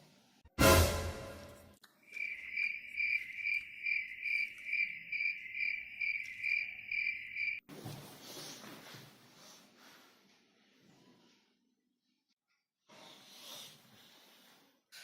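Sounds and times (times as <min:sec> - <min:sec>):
cricket chirping: 0:02.0 - 0:07.6.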